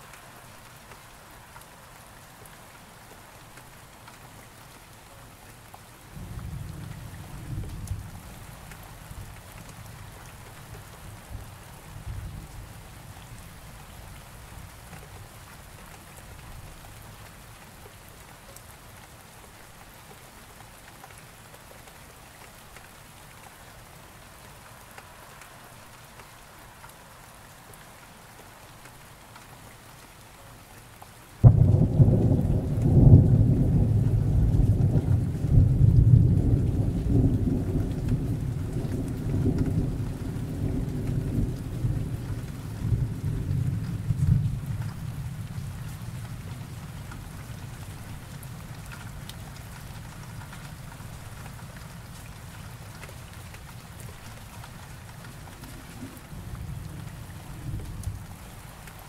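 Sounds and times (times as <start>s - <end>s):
rain falling: 0.0s - 59.0s
thunderclap rumbling: 31.4s - 45.5s.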